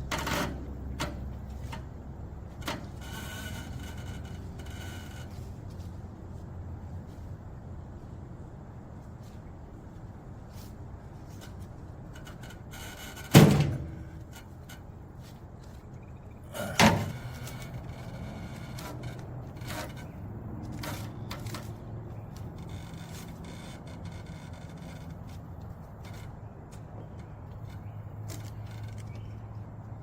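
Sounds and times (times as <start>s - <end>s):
steel rebar clanking: 16.5s - 20.0s.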